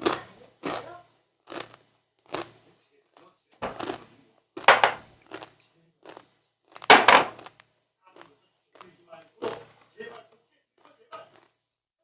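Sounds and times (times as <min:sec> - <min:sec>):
tableware clattering: 0:03.6 - 0:03.9, 0:04.7 - 0:05.0, 0:06.9 - 0:07.4.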